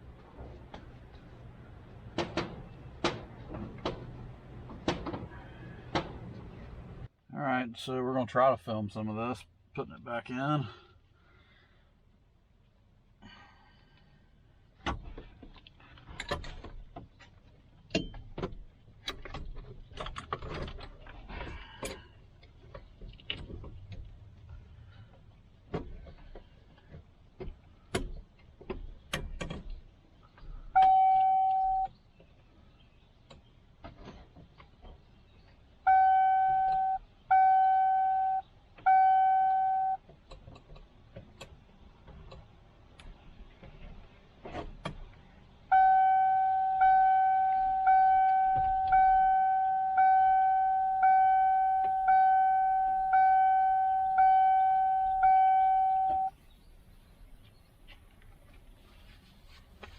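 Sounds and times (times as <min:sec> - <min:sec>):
parts clicking and knocking: 0:00.3 - 0:06.6, 0:14.8 - 0:31.3
dashboard warning chime dinging: 0:30.8 - 0:31.9, 0:35.8 - 0:40.0, 0:45.7 - 0:56.4.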